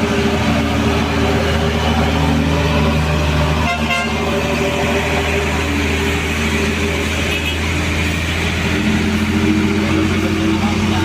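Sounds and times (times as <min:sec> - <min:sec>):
diesel truck engine droning: 0:00.0 - 0:11.0
truck horn toot: 0:03.6 - 0:04.6, 0:07.0 - 0:07.8.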